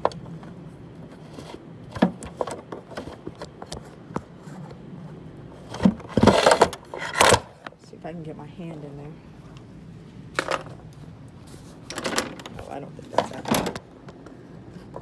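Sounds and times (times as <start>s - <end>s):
hands working bolt among parts: 5.8s - 7.5s, 10.4s - 10.8s, 11.8s - 13.8s.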